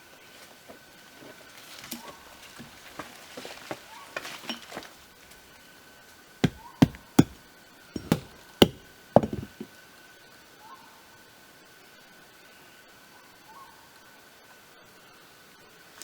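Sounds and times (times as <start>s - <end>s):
axe chopping into wood: 6.4s - 7.4s, 8.0s - 9.7s.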